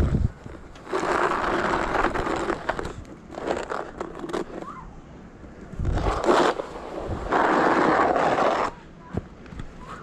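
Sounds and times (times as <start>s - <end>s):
snow shovel scraping snow: 0.8s - 4.7s, 5.8s - 8.8s.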